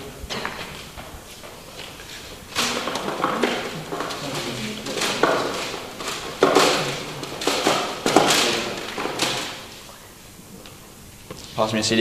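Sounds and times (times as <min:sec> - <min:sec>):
plastic cases clattering: 0:00.0 - 0:10.0.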